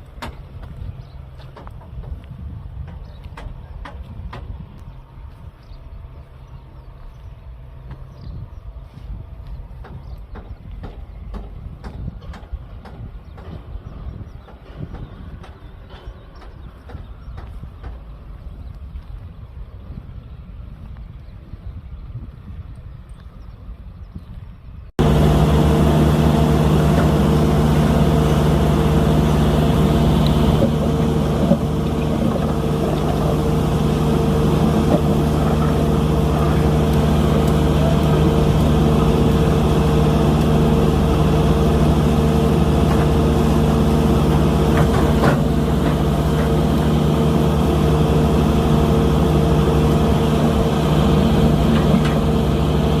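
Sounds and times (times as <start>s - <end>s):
heavy machinery engine running: 25.0s - 53.0s.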